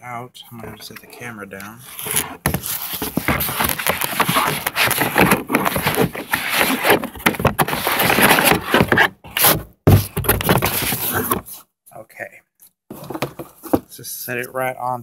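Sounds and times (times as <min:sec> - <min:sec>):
cardboard packaging rustling: 0:01.9 - 0:11.4.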